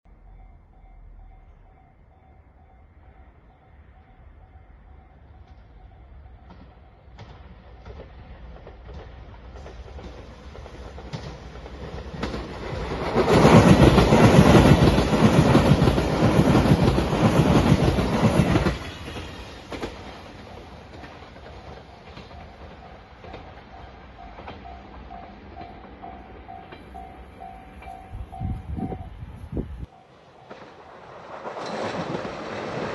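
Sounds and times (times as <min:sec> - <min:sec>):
train wheels on rails: 0:03.0 - 0:32.9
level crossing alarm ringing: 0:22.0 - 0:29.2.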